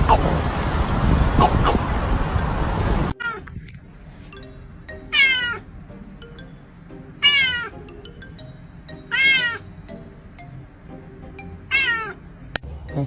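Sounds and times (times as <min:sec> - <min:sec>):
faint background music: 0:02.9 - 0:13.0
cat meowing: 0:07.2 - 0:07.7, 0:11.7 - 0:12.2.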